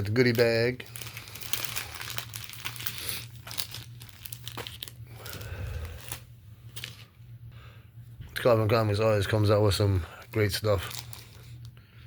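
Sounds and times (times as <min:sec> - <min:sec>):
packaging crinkling and rustling: 0:00.0 - 0:07.2, 0:10.3 - 0:11.7.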